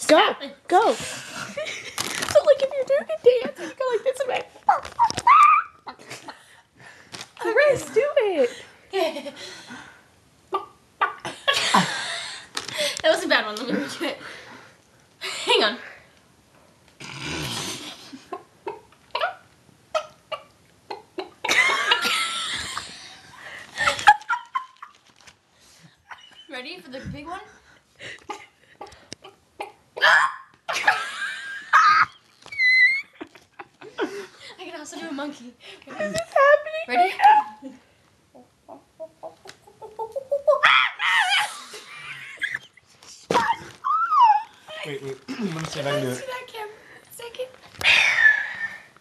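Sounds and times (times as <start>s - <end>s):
person imitating chicken clucks: 38.4s - 41.0s.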